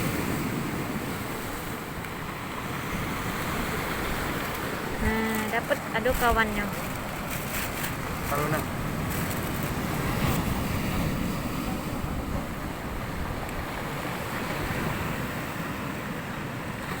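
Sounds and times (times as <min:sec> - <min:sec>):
wind buffeting microphone: 0:00.0 - 0:17.0
water washing: 0:04.0 - 0:10.6.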